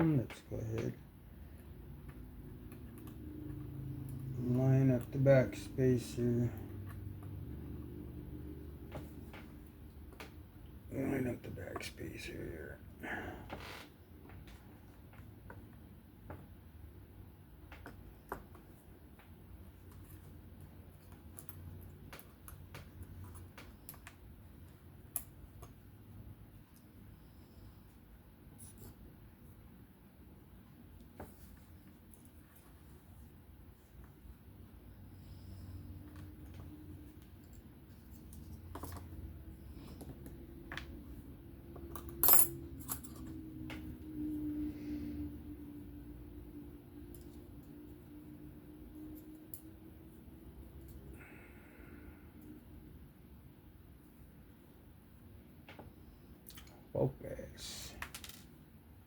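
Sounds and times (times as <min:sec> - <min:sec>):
faint steady hum: 0:00.0 - 0:59.0
metal parts clicking and clinking: 0:41.9 - 0:43.4.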